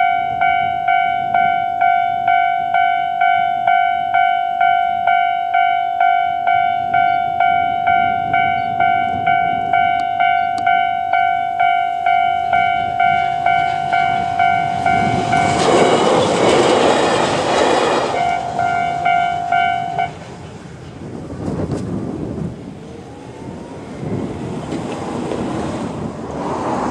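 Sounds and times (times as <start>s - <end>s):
level crossing warning bell: 0.0s - 16.6s, 17.9s - 20.2s
electric train passing: 0.0s - 26.9s.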